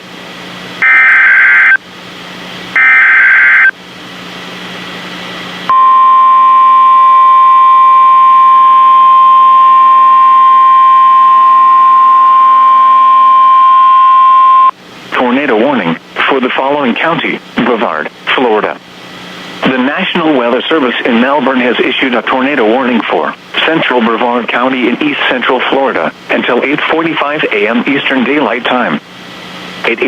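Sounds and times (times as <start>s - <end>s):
digital data warble bursts: 0.8s - 1.8s, 2.8s - 3.7s
steady warning alarm tone: 0.8s - 1.8s, 2.8s - 3.7s, 5.7s - 14.7s.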